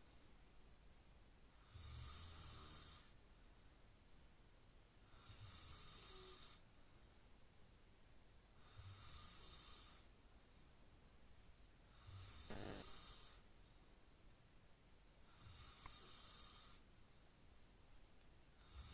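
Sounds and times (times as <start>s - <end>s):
person snoring: 1.6s - 3.1s, 8.6s - 10.0s, 12.0s - 13.4s, 15.3s - 16.8s.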